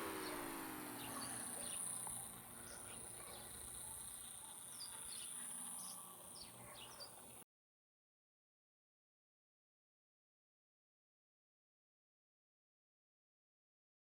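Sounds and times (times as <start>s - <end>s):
bird chirps: 0.0s - 7.4s
high insect drone: 0.0s - 7.4s.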